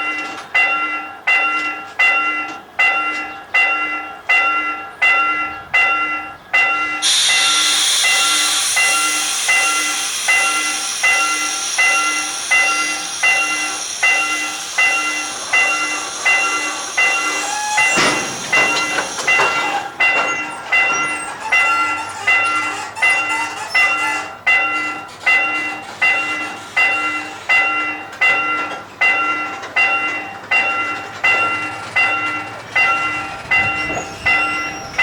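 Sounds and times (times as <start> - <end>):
level-crossing bell ringing: 0.0 - 7.6, 8.2 - 35.0
train hiss: 7.0 - 24.0, 26.0 - 27.8.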